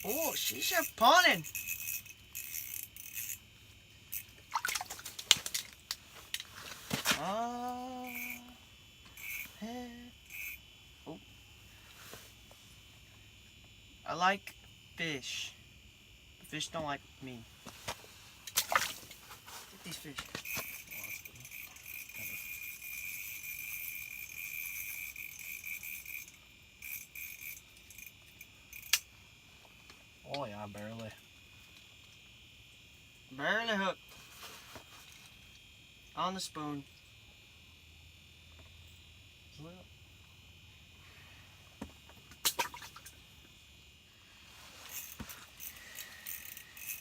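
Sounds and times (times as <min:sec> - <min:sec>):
fishing reel whirring and ticking: 0:00.0 - 0:06.4, 0:07.3 - 0:10.7, 0:19.8 - 0:29.1, 0:44.9 - 0:47.0.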